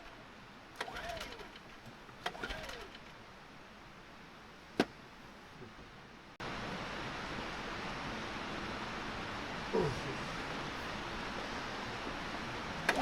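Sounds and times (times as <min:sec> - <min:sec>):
recoil cord whirring: 0:00.0 - 0:03.2, 0:12.7 - 0:13.0.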